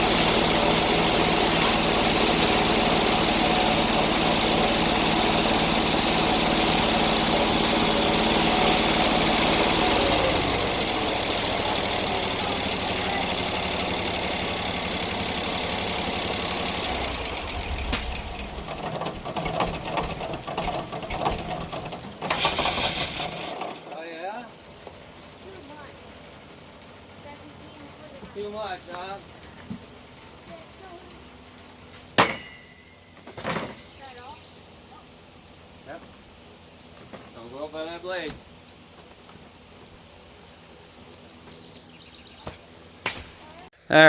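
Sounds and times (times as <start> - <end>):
knocks and rattles: 0.0 - 24.0
sawmill engine running: 0.0 - 31.8.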